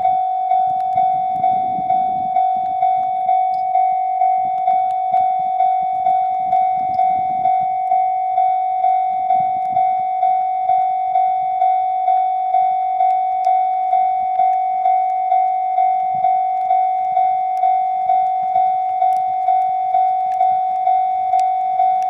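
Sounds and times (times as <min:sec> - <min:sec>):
faint low rumble: 0:00.0 - 0:22.0
level crossing warning bell: 0:00.0 - 0:22.0.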